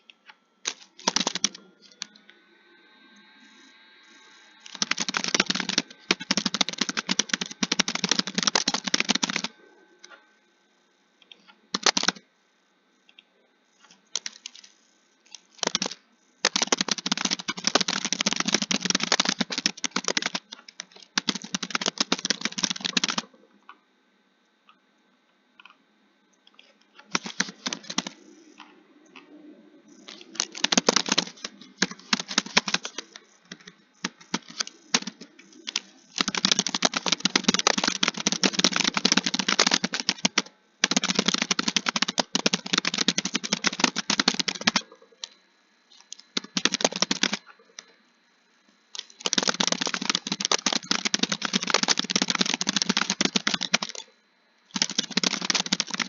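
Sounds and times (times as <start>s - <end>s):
typing on computer keyboard: 0.6s - 2.2s, 4.5s - 10.2s, 11.7s - 12.2s, 14.2s - 23.4s, 27.0s - 28.7s, 30.0s - 45.4s, 46.0s - 47.9s, 49.0s - 56.0s.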